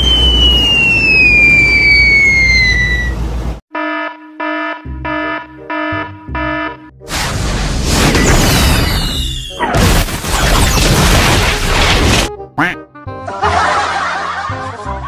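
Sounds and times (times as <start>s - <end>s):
rushing noise with descending whistle: 0.0s - 3.4s.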